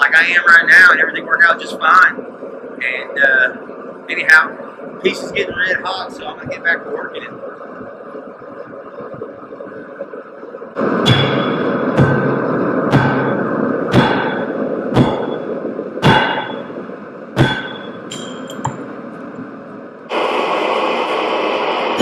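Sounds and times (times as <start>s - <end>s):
steady rushing noise: 0.0s - 22.0s
hammer striking metal on anvil: 11.1s - 16.7s, 17.4s - 18.8s.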